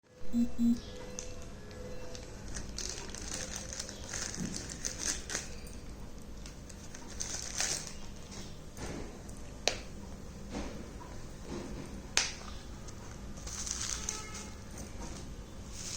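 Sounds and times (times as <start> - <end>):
packaging rustling: 2.5 - 5.7, 6.4 - 8.1, 13.4 - 14.4.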